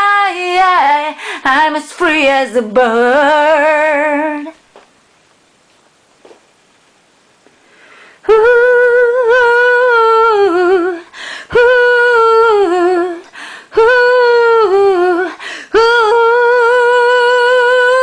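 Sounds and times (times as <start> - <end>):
woman breathing: 1.1 - 1.5, 7.6 - 8.3, 11.0 - 11.6, 13.2 - 13.8, 15.3 - 15.8.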